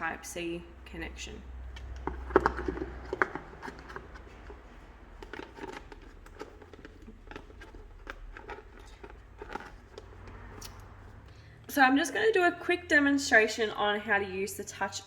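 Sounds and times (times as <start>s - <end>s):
hands handling cable and packaging: 1.7s - 11.4s.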